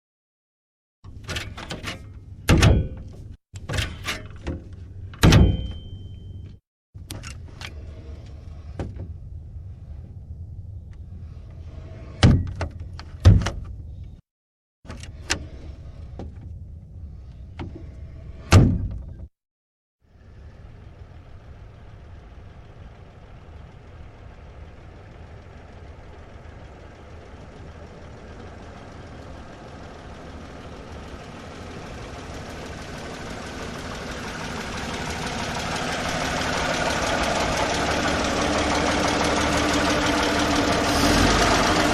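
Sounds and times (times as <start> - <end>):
old car engine running: 20.2 - 41.9.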